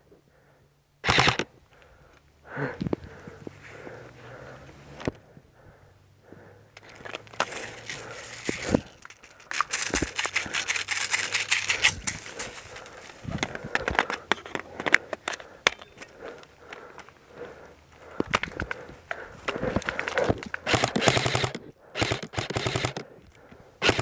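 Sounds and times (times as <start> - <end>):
footsteps through dry leaves: 7.4 - 13.3.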